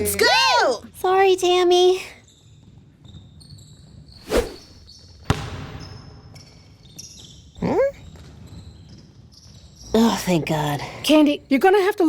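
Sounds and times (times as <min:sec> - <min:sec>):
short whoosh: 0:04.2 - 0:04.8.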